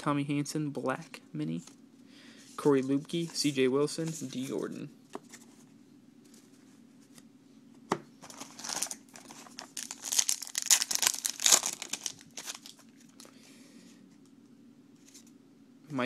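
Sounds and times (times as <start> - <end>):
card pack wrapper crinkling: 8.2 - 13.3.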